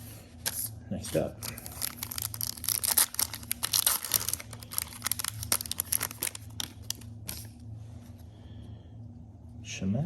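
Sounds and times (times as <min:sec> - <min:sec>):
foil wrapper tearing and crinkling: 0:01.4 - 0:07.5.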